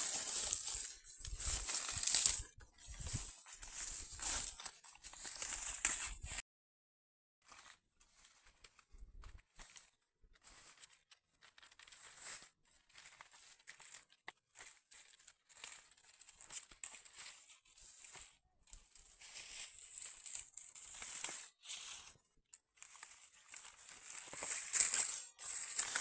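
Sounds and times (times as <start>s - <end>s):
dry corn husks rustling: 0.0s - 6.4s, 11.5s - 22.2s, 22.8s - 26.0s.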